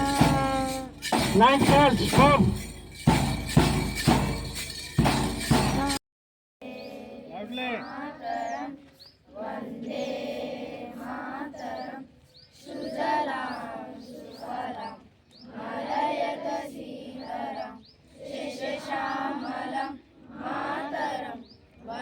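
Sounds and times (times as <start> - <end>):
children singing in unison: 0.0 - 1.2, 6.6 - 22.0.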